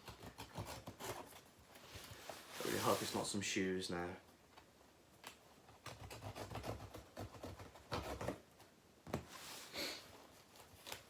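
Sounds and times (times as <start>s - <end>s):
cardboard parcel rustling and scraping: 0.4s - 3.3s, 9.2s - 11.0s.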